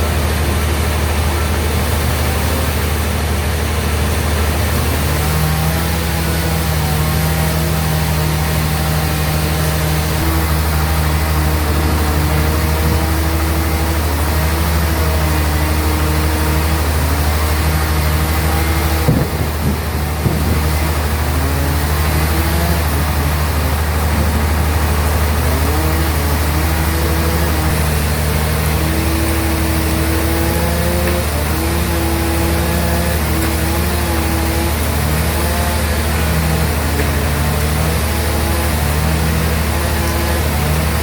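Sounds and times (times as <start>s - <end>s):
bandsaw humming and whining: 0.0s - 41.0s.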